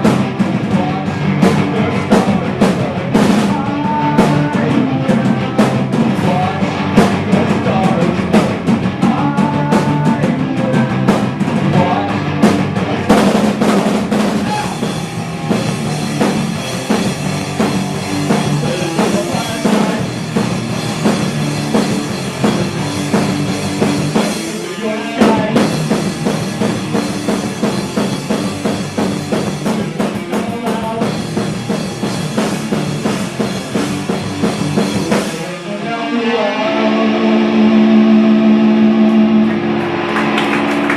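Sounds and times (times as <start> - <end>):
kick and snare drums: 0.0 - 24.6
rock band playing: 0.0 - 40.9.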